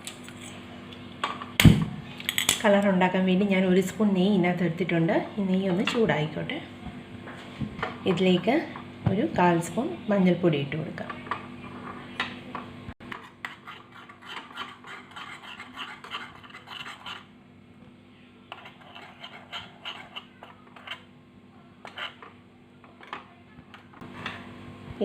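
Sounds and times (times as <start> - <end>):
spoon scraping a small pan: 13.1 - 17.3, 18.5 - 21.1, 21.8 - 23.2.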